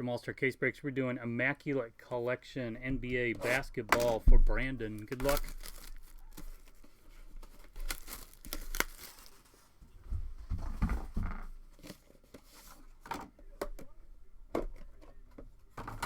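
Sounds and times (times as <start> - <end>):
plastic wrapping crinkling and tearing: 3.4 - 4.2, 4.9 - 9.8.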